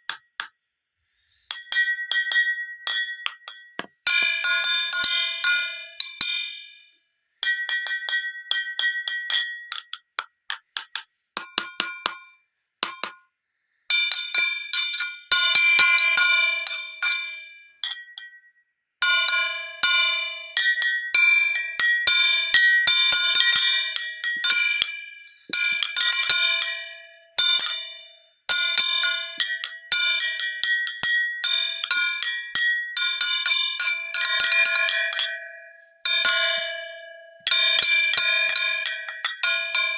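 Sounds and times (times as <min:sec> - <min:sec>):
glass bottles struck ringing: 0:01.4 - 0:06.4, 0:19.1 - 0:39.9.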